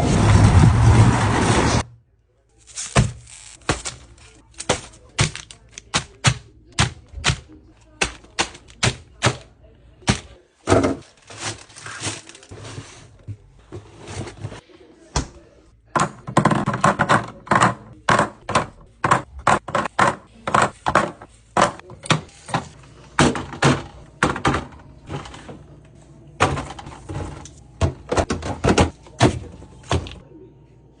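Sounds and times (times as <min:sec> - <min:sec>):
groceries clunking on shelves: 0:02.8 - 0:30.2.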